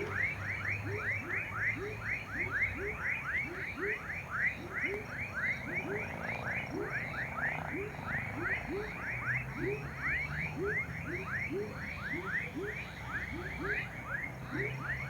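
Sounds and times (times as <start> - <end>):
frogs chirping: 0.0 - 15.0.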